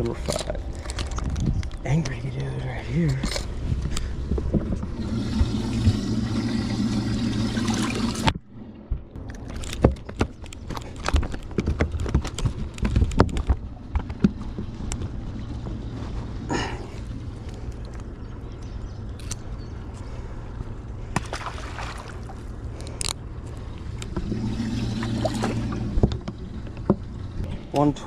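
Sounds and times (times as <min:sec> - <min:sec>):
steady low hum: 0:00.0 - 0:28.0
knocks and clatter on a boat: 0:03.1 - 0:06.1, 0:08.2 - 0:16.4, 0:25.4 - 0:27.9
water rushing and gurgling: 0:04.9 - 0:09.6, 0:21.2 - 0:22.7, 0:23.9 - 0:28.0.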